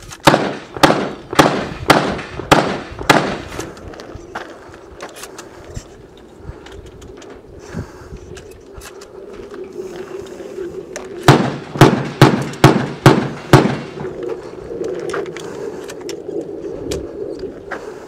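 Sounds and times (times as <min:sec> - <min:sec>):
shotgun shots: 0:00.2 - 0:03.6, 0:11.2 - 0:14.1.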